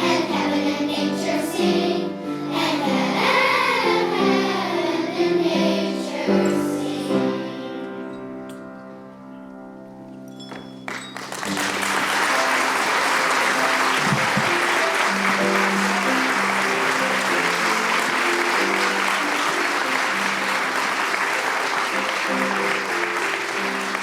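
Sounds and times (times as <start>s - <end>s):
instrumental music: 0.0s - 24.0s
audience applause: 10.9s - 24.0s
held musical chord: 11.6s - 24.0s.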